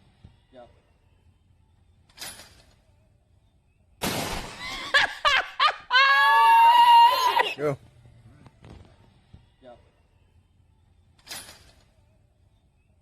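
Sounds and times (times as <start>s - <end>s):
shotgun blast: 4.0s - 4.9s
excited yelps: 4.9s - 7.6s
long high-pitched cry: 5.6s - 7.6s.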